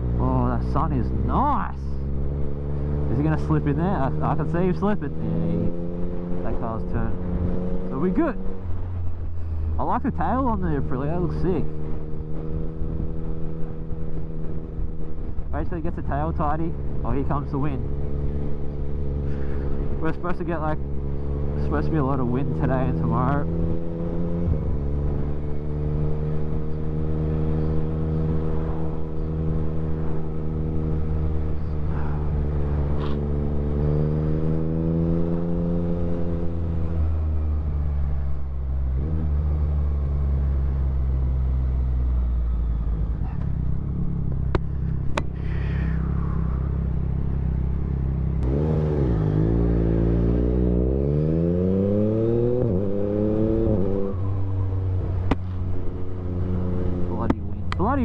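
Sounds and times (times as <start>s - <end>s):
motorcycle engine: 0.0s - 58.0s
wind rumble: 42.0s - 50.7s.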